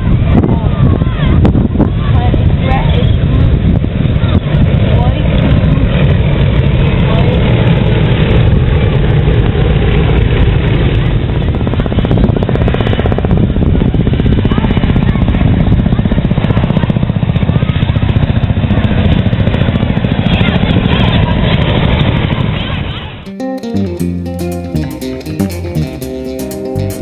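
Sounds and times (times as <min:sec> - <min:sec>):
low-flying aircraft engine: 0:00.0 - 0:23.3
fast chopping beat: 0:23.3 - 0:27.0.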